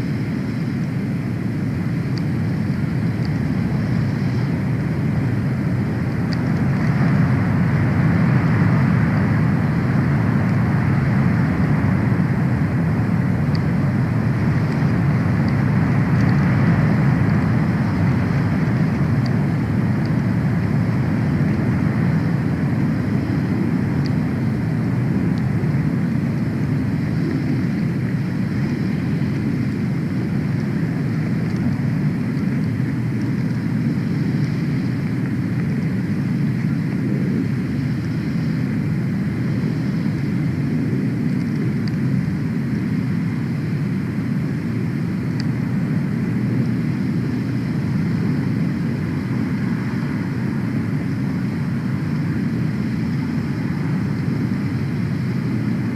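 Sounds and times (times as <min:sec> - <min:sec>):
rushing wind: 0:00.0 - 0:55.9
faint high ticks: 0:16.2 - 0:16.4, 0:31.4 - 0:32.8.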